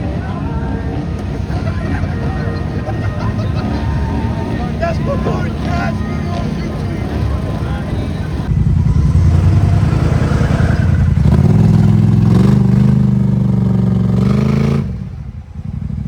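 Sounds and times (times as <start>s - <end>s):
off-road vehicle engine revving: 0.0s - 16.0s.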